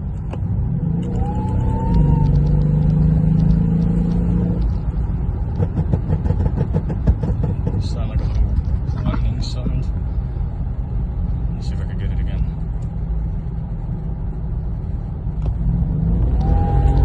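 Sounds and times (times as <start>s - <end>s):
car engine rumbling: 0.0s - 17.0s
whine rising in pitch: 0.9s - 4.6s.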